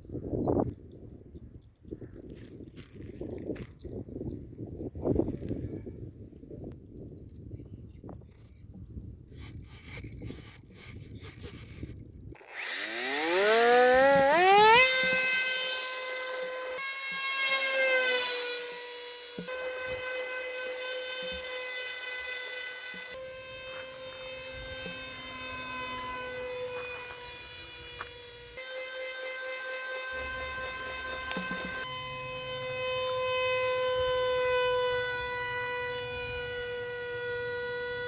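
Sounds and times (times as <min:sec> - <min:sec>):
small electric motor whine: 0:09.3 - 0:38.0.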